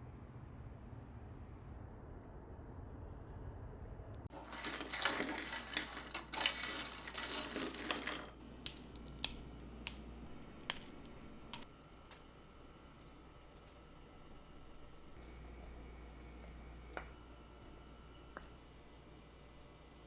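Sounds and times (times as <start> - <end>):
utensils clicking on dishes: 4.3 - 11.7.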